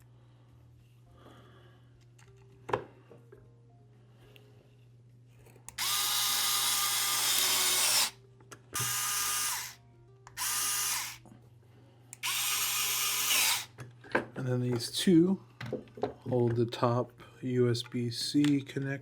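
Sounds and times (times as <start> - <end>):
electric screwdriver running: 5.7 - 8.2, 8.8 - 11.2, 12.2 - 13.7.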